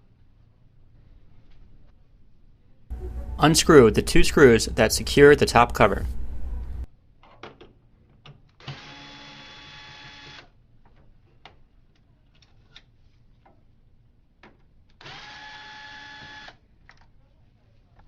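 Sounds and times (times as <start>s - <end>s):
electric screwdriver whining: 8.6s - 10.5s, 15.0s - 16.6s.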